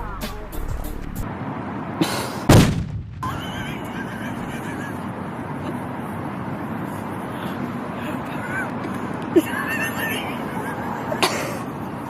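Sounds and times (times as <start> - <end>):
popper bang: 2.5 - 3.4.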